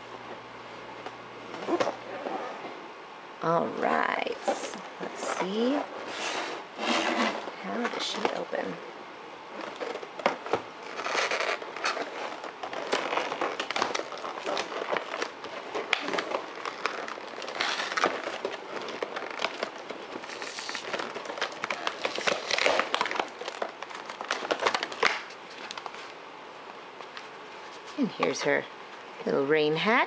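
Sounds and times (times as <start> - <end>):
plastic and cardboard crinkling: 4.4 - 8.8, 9.5 - 26.3.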